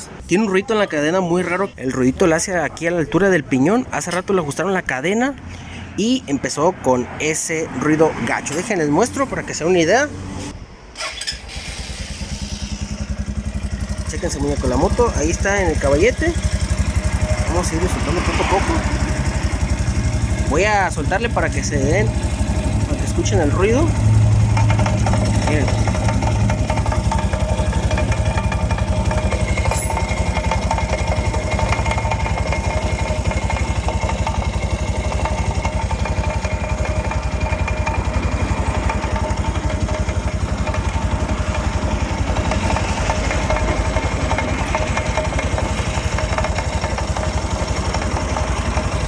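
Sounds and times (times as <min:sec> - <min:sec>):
motorcycle engine running: 0:07.3 - 0:49.0
drive chain noise: 0:22.1 - 0:49.0.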